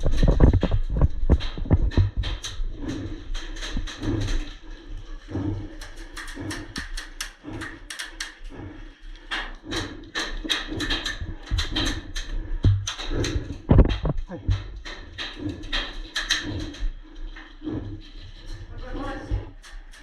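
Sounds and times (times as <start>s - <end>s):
footsteps: 0.0s - 20.0s
gear rattling: 0.0s - 20.0s
sharp clicks and knocks: 0.0s - 20.0s.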